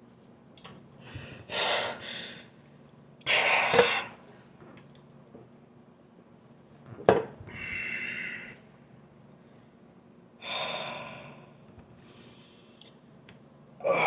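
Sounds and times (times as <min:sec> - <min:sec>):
person gasping breaths: 0:01.0 - 0:02.6, 0:07.5 - 0:08.6, 0:10.4 - 0:12.9.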